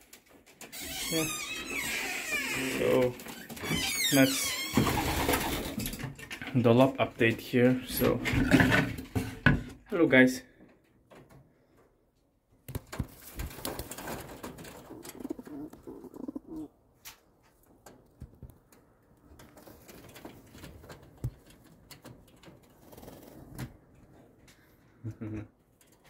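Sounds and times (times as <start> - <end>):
pigeons cooing: 14.7 - 16.7.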